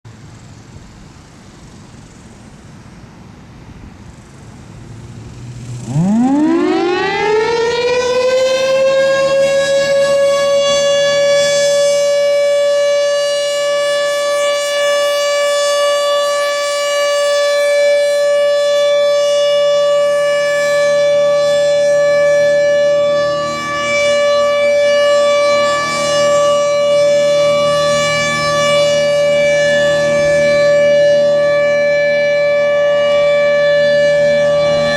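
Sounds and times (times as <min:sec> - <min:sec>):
outdoor warning siren: 0:04.0 - 0:34.9
wind noise on microphone: 0:08.3 - 0:17.4.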